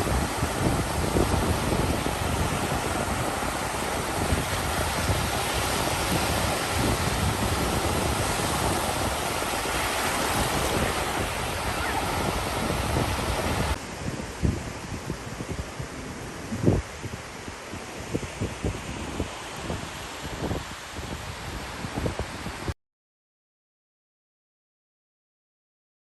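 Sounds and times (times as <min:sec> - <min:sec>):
ocean surf washing onto beach: 0:00.0 - 0:22.7
wind buffeting microphone: 0:00.0 - 0:22.7.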